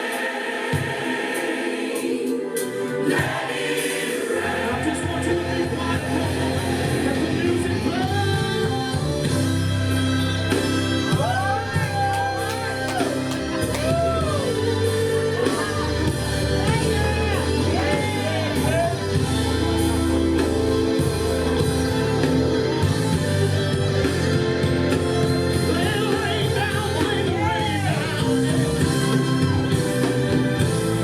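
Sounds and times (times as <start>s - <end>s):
band accompaniment: 4.5s - 31.0s
singer's voice in runs: 14.5s - 20.1s.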